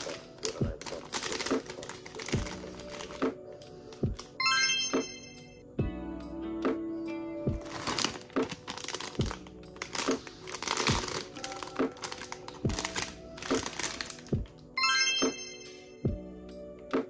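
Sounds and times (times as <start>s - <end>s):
packaging crinkling and rustling: 0.0s - 3.2s, 3.8s - 4.4s, 7.6s - 14.5s
background music with beat: 0.0s - 17.0s.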